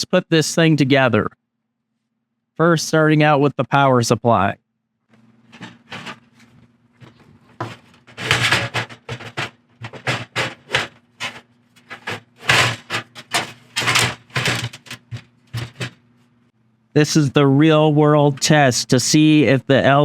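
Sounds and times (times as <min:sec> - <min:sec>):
metal parts knocking and rattling: 0:05.4 - 0:16.3.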